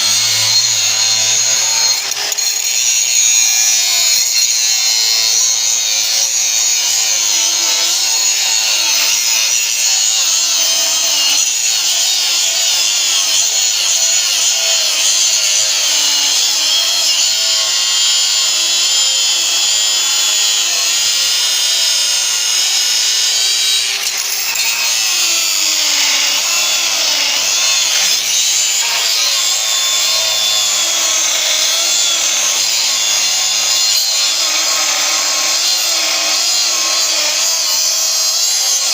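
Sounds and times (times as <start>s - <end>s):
angle grinder grinding steel: 0.0s - 38.9s.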